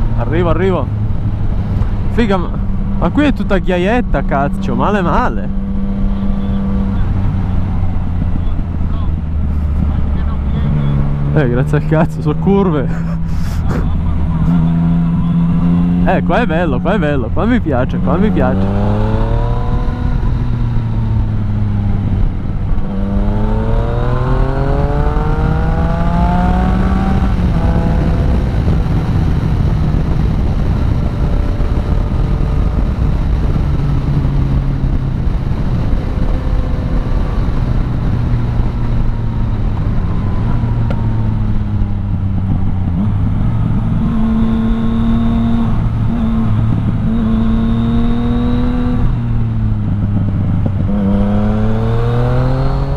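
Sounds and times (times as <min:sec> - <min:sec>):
motorcycle engine revving: 0:00.0 - 0:52.9.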